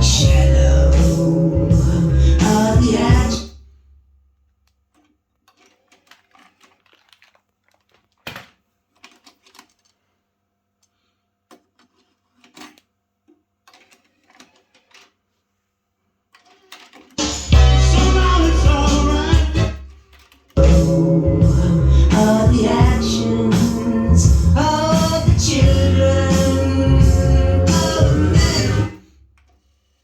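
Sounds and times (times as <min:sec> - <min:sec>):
music: 0:00.0 - 0:03.4, 0:17.2 - 0:19.9, 0:20.6 - 0:29.1.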